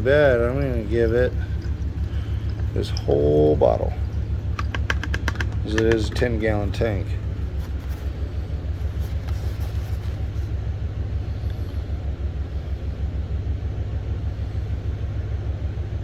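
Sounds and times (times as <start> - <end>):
engine idling: 0.0 - 16.0.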